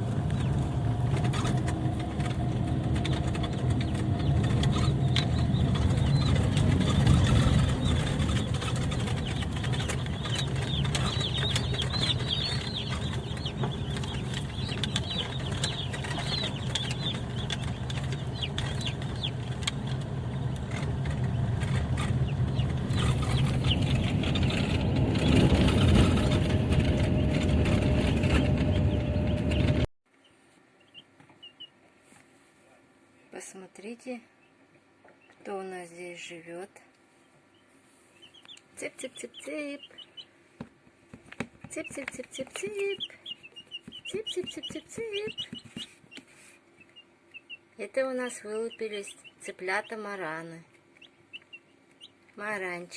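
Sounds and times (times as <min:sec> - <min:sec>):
engine and road rumble: 0:00.0 - 0:29.9
chicks cheeping: 0:00.0 - 0:31.9, 0:34.3 - 0:35.5, 0:37.1 - 0:40.6, 0:41.2 - 0:52.9.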